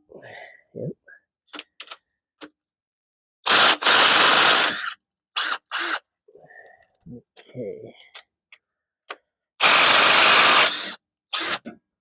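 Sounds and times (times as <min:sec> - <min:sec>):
power tool bursts: 0:03.5 - 0:06.0, 0:09.6 - 0:11.7.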